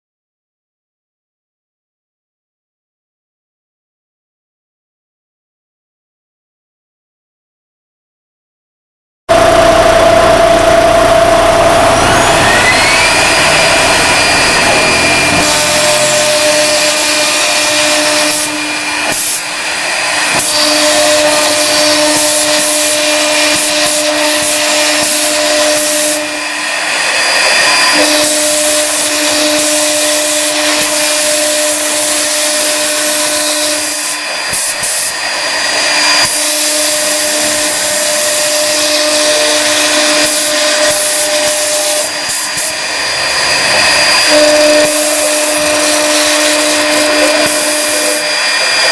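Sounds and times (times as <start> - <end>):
router spindle whine: 9.3 - 48.9
cutting hiss: 11.7 - 48.9.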